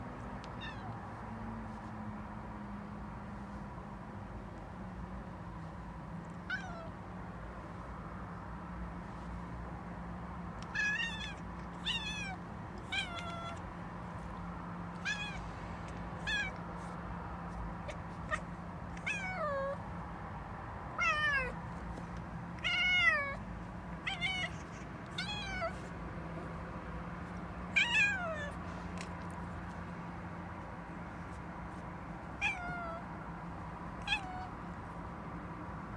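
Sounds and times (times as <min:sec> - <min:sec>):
cat chattering: 0:00.4 - 0:01.1, 0:06.5 - 0:06.9, 0:10.6 - 0:19.8, 0:20.9 - 0:21.8, 0:22.6 - 0:26.6, 0:27.2 - 0:29.8, 0:32.2 - 0:33.1, 0:34.0 - 0:34.8.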